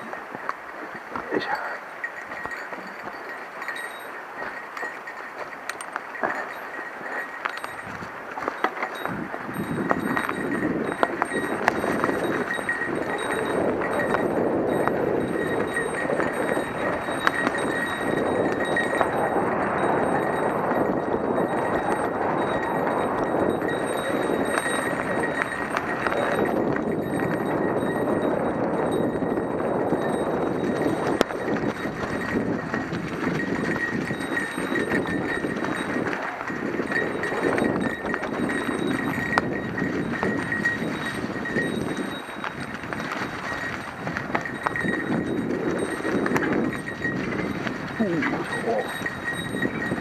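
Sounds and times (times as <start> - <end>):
bike rattling: 0.0 - 50.0
bike tyres crunching on trail: 2.0 - 50.0
bike tyres crunching over stones: 30.7 - 49.5.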